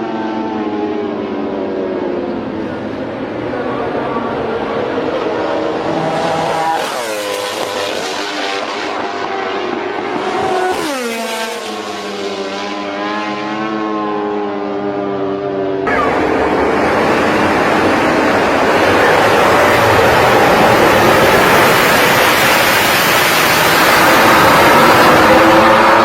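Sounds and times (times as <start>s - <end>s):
racing motorcycle engines high revs: 3.7s - 26.0s
rough noisy engine: 15.8s - 26.0s.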